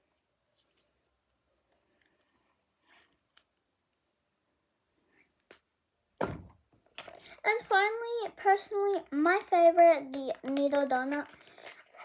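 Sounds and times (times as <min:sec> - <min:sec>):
soft rustles of small objects: 0:00.0 - 0:06.0, 0:06.8 - 0:12.0.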